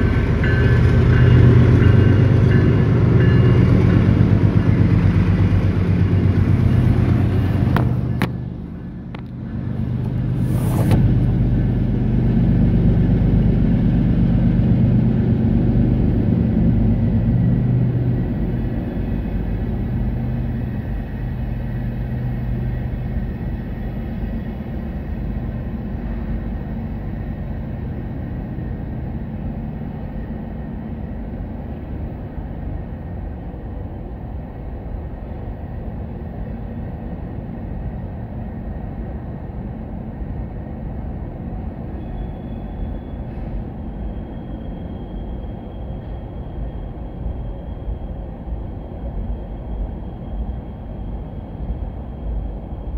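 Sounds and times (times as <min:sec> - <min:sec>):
low engine tone: 0:00.0 - 0:52.9
train wheels rumbling on rails: 0:00.0 - 0:52.9
faint high whine: 0:41.7 - 0:52.9.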